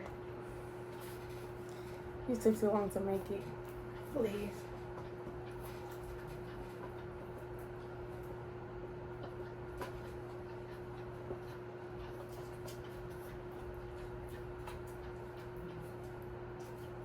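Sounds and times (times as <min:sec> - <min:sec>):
electrical hum: 0:00.0 - 0:17.0.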